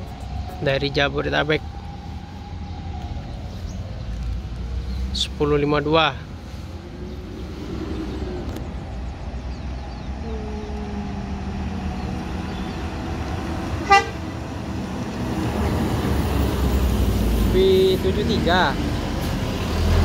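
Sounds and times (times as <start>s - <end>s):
bus engine running: 0.0s - 20.0s
traffic: 0.0s - 20.0s
vehicle horn: 13.8s - 14.3s.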